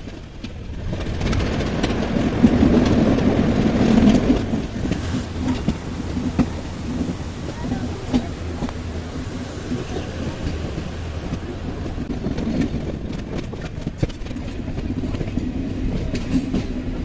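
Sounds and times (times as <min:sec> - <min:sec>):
wheel clicks over rail joints: 0:00.0 - 0:08.9, 0:09.7 - 0:16.8
train rumbling on rails: 0:00.0 - 0:17.0.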